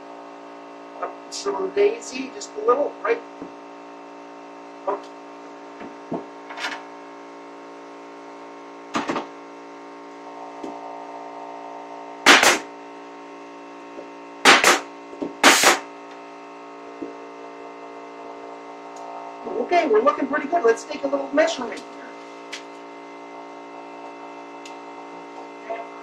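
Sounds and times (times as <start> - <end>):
steady background hum: 0.0 - 26.0
nail gun firing into wood: 12.3 - 12.7, 14.4 - 15.9.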